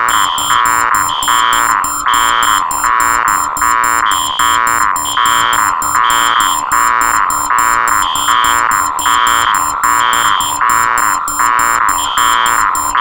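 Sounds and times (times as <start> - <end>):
higher alarm tone: 0.0 - 13.0
pulsing beeping tone: 0.0 - 13.0
rapid high-pitched beeping: 0.0 - 13.0.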